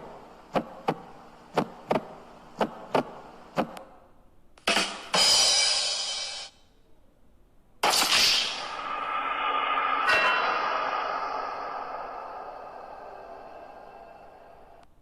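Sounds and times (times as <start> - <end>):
sharp drum hits: 4.6 - 6.5
loud cymbal crash: 4.7 - 6.5, 7.8 - 14.8.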